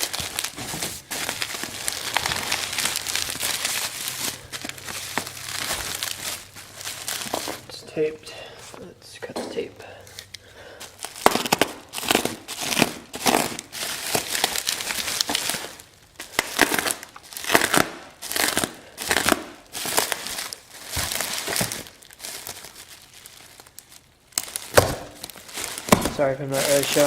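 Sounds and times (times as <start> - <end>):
packing tape being cut: 0.0 - 7.7, 10.2 - 22.8
wrapping crinkling and tearing: 0.0 - 8.9, 10.1 - 27.0.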